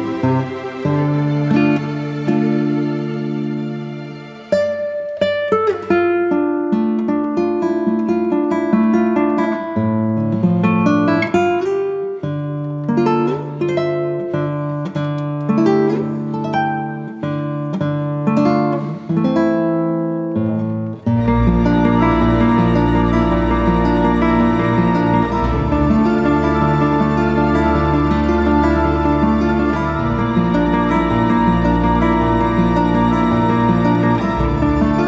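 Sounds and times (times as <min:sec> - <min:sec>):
acoustic guitar plucking melody: 0:00.0 - 0:35.0.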